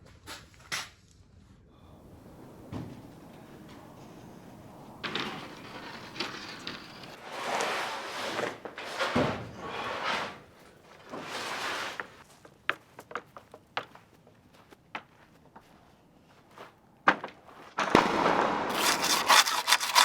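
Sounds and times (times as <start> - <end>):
long scraping sliding sounds: 2.0 - 12.2, 18.7 - 20.0.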